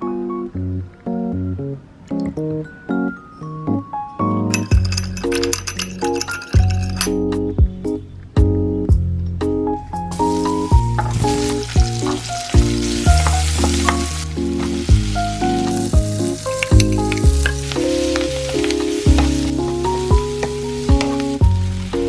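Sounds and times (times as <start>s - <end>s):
light cheerful background music: 9.9s - 22.0s
food sizzling in hot oil: 15.5s - 18.4s.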